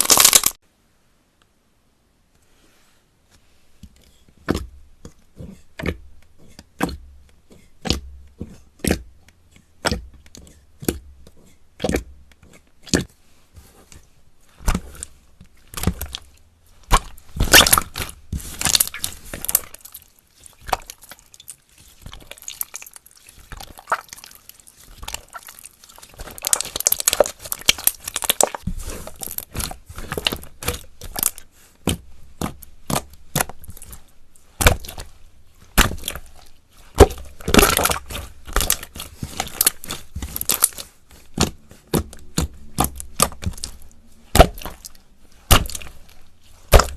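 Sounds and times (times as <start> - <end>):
slime squished by hand: 0.0 - 0.6, 14.6 - 46.9.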